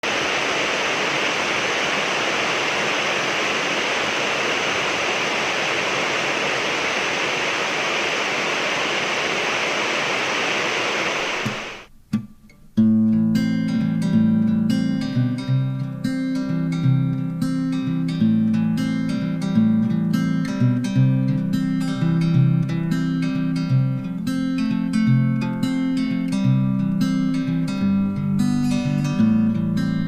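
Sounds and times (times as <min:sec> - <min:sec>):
rain hiss: 0:00.0 - 0:11.9
acoustic guitar music: 0:11.8 - 0:30.0.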